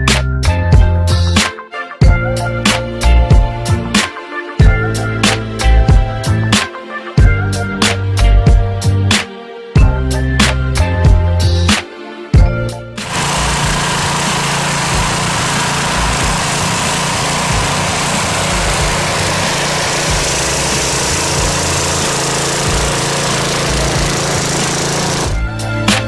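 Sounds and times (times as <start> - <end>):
small engine running steadily: 12.4 - 26.0.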